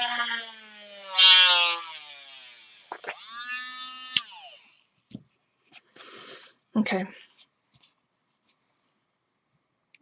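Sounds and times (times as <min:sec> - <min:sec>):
drilling noise: 0:00.0 - 0:04.8
rotary tool motor whine: 0:00.0 - 0:04.9.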